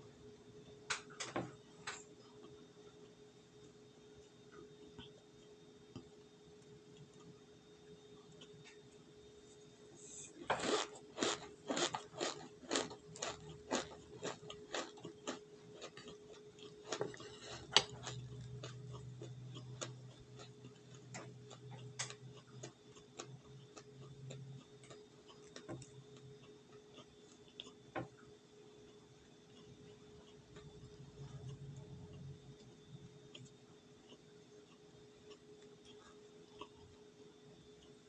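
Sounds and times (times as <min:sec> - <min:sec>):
cornstarch crunching: 0:10.5 - 0:20.9.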